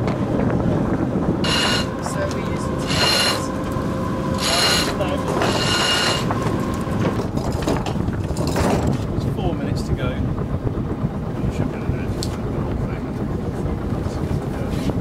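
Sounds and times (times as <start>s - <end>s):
water noise: 0.0s - 15.0s
wind: 0.0s - 15.0s
deck winch winding: 1.4s - 8.9s.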